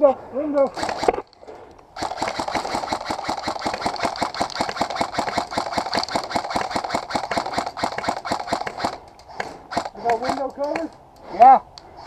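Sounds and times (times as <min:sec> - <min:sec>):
airsoft gun full-auto burst: 0:00.8 - 0:01.2, 0:02.0 - 0:09.0, 0:09.7 - 0:10.5.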